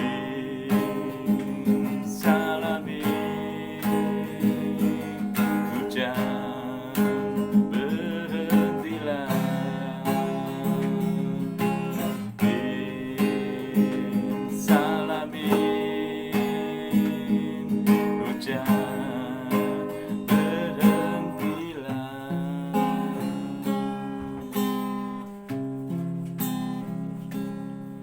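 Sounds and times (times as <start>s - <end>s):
acoustic guitar strumming: 0.0s - 28.0s.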